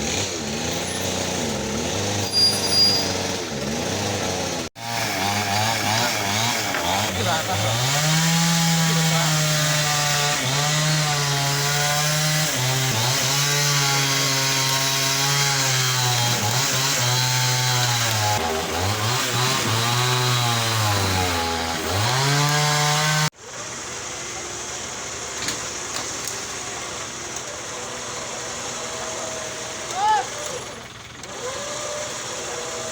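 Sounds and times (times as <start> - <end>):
chainsaw cutting wood: 0.0 - 23.4, 25.2 - 32.9.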